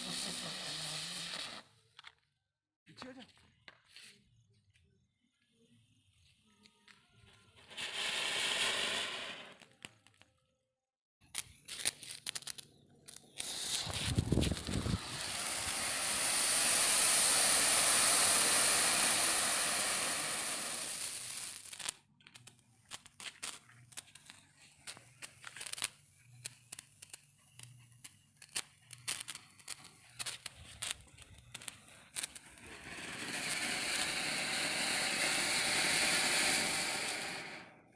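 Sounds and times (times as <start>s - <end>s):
firework hissing: 0.0s - 1.8s, 7.6s - 9.7s, 11.6s - 22.0s, 22.9s - 37.9s
firework pops and crackles: 0.0s - 2.2s, 7.6s - 10.3s, 11.2s - 37.9s.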